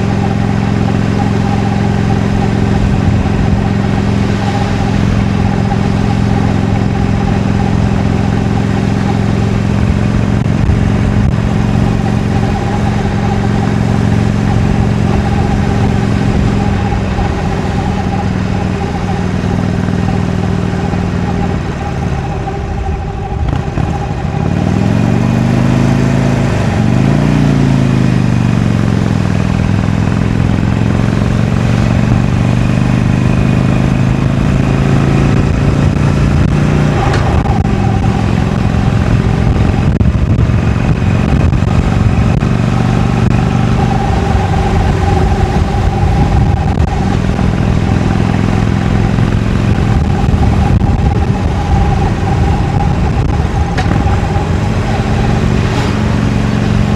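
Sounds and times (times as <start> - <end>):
motorcycle engine accelerating: 0.0 - 56.9.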